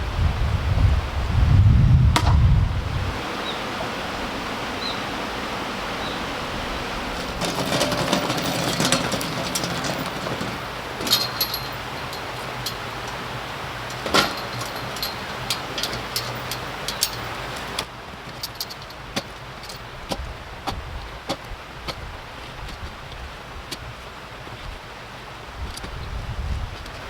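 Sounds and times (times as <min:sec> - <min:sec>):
wind rumbling on microphone: 0:00.0 - 0:17.8, 0:19.9 - 0:27.0
outdoor hiss: 0:00.0 - 0:27.0
clicks and knocks: 0:07.2 - 0:19.8.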